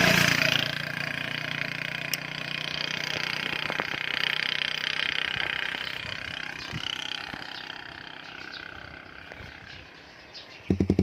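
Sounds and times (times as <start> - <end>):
motorcycle open exhaust: 0.0 - 11.0.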